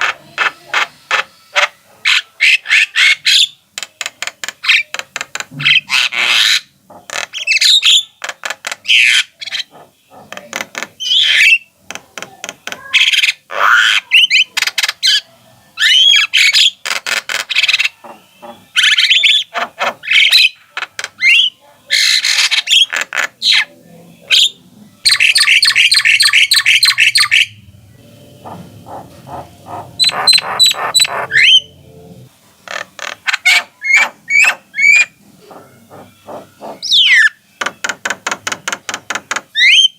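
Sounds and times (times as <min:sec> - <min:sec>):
bird chattering and whistling: 0:15.8 - 0:23.7, 0:24.3 - 0:27.6, 0:28.4 - 0:31.8, 0:33.2 - 0:37.4, 0:39.6 - 0:39.9.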